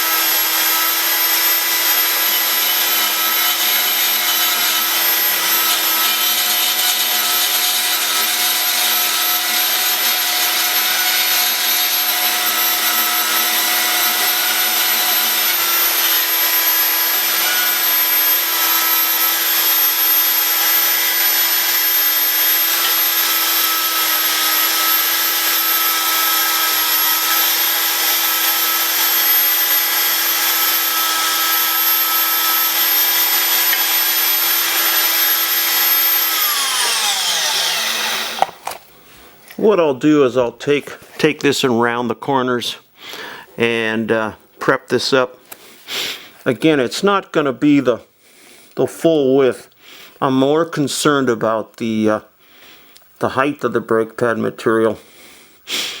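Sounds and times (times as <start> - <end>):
metal-cutting bandsaw running: 0.0 - 38.8.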